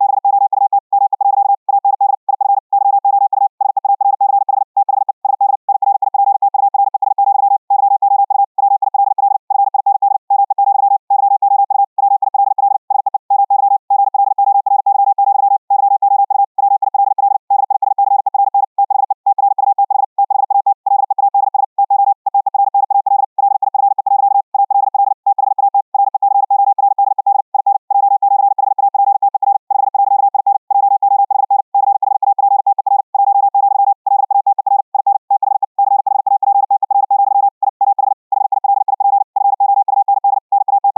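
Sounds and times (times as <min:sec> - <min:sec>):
morse code tone: 0:00.0 - 0:05.5, 0:37.9 - 0:40.9.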